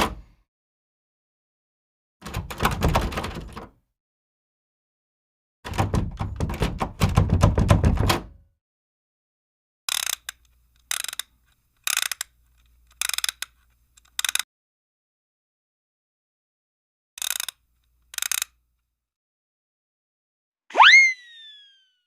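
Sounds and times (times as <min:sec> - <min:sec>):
mechanical clattering clicks: 0:09.9 - 0:12.3, 0:12.9 - 0:14.4, 0:17.2 - 0:18.6.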